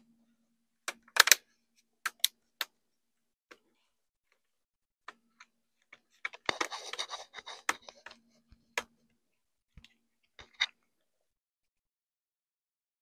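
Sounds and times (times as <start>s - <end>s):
scratchy plastic rustle: 6.0s - 8.1s.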